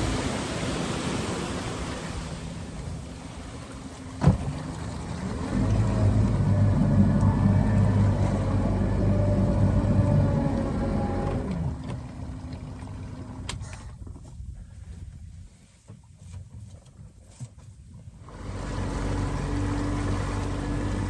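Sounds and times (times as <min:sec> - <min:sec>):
boat motor droning: 0:00.0 - 0:13.8, 0:18.2 - 0:21.0.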